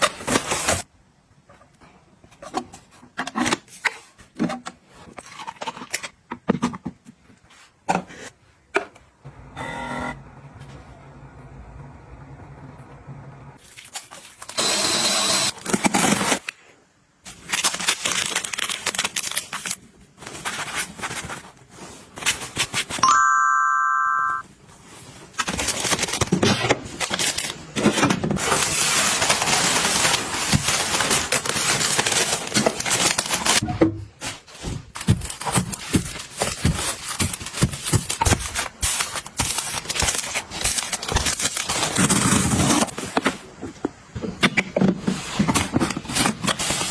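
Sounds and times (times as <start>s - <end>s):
items rustling and scraping: 0.0s - 9.2s, 13.6s - 14.7s, 15.5s - 23.0s, 24.4s - 46.9s
electronic chime: 23.0s - 24.4s.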